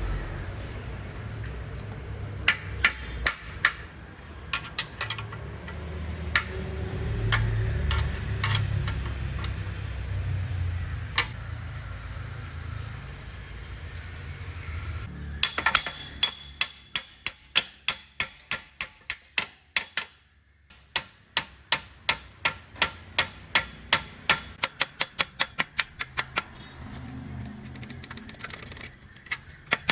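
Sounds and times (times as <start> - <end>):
steady low hum: 0.0 - 15.3
hand tools knocking on metal: 7.2 - 9.6.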